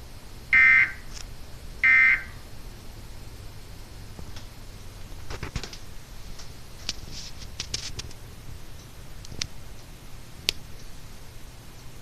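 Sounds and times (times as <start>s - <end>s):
steady low hum: 0.0s - 12.0s
soft clicks and crackles: 4.1s - 4.6s, 5.2s - 11.0s.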